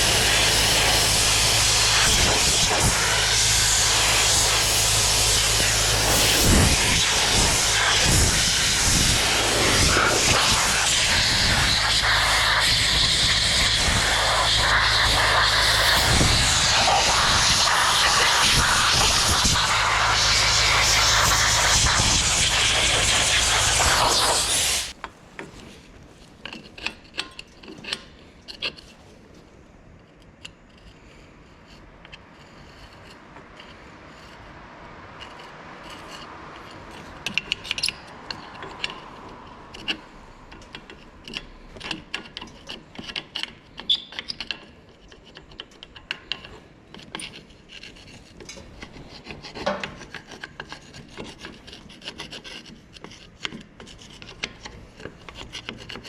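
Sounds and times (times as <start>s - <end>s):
loud spray hiss: 0.0s - 25.0s
rubbing and scraping: 0.0s - 29.6s, 30.6s - 56.0s.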